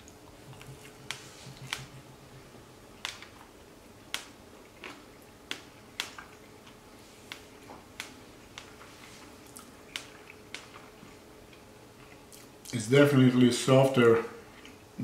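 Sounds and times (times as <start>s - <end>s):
person chewing soft food: 0.0s - 12.8s, 14.4s - 15.0s
mouth clicks and smacks: 9.4s - 11.0s.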